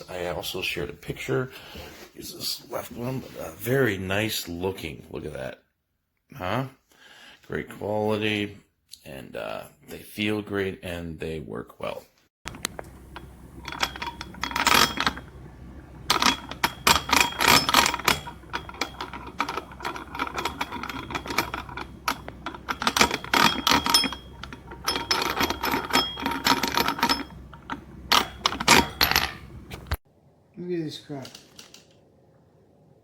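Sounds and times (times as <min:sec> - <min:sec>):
metallic ringing: 0:12.5 - 0:29.8
metal weight plates clinking: 0:12.5 - 0:29.9.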